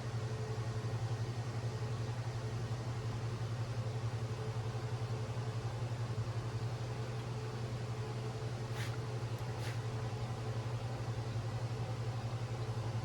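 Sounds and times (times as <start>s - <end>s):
low machine hum: 0.0s - 13.0s.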